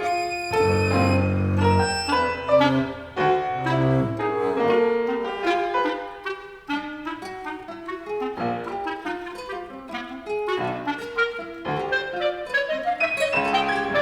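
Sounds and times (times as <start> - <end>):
low sustained string notes: 0.0 - 4.3
contemporary chamber music: 0.0 - 14.0.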